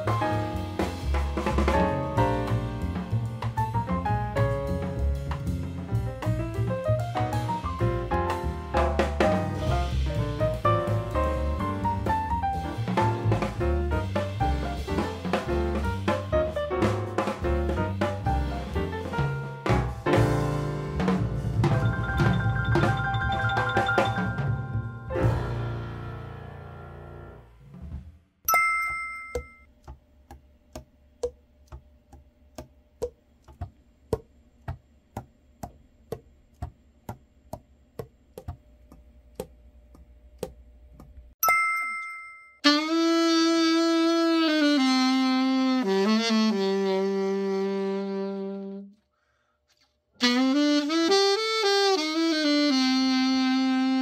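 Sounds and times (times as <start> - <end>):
two-tone chime: 21.8 - 24.9, 28.5 - 29.7, 41.4 - 42.6
saxophone held notes: 42.6 - 49.0, 50.2 - 54.0.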